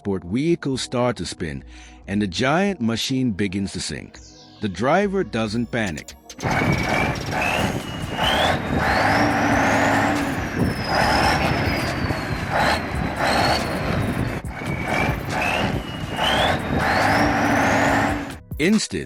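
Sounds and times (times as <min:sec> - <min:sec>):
heavy truck engine under load: 0:06.4 - 0:18.4
high whine of spinning wheels: 0:06.4 - 0:18.4.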